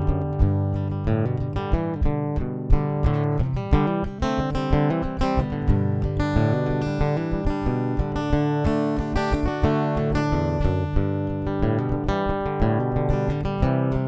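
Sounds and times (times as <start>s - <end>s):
plucked guitar: 0.0s - 14.0s
steady bass line: 0.0s - 14.0s.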